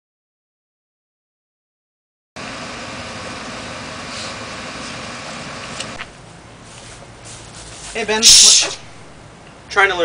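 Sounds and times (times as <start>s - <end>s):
background hiss: 6.2s - 9.8s.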